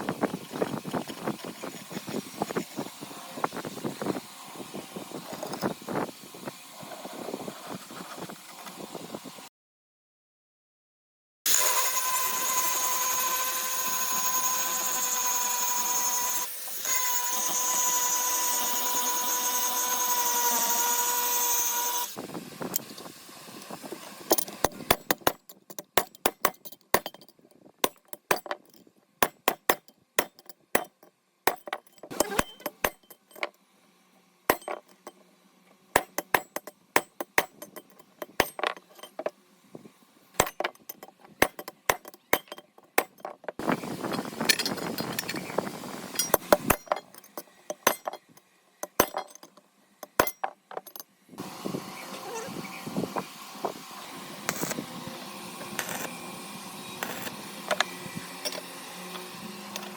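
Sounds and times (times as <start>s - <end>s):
power tool whining: 11.5s - 24.8s, 51.4s - 59.9s.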